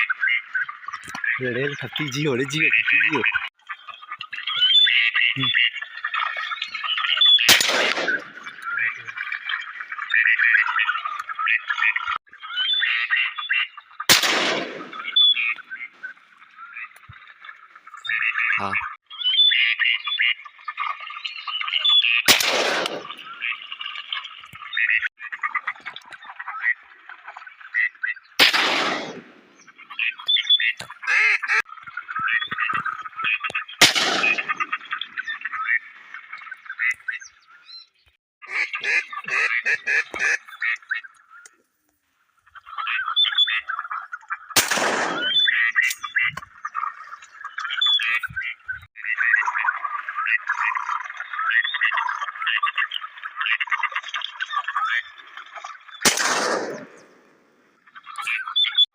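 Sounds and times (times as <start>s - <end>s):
ducks quacking: 0.0s - 21.0s, 21.6s - 26.9s, 27.6s - 37.3s, 38.4s - 41.2s, 42.5s - 55.4s
shotgun shots echoing: 7.5s - 8.6s, 14.1s - 15.2s, 22.3s - 23.3s, 28.4s - 29.6s, 33.8s - 34.8s, 44.6s - 45.5s, 56.0s - 57.3s.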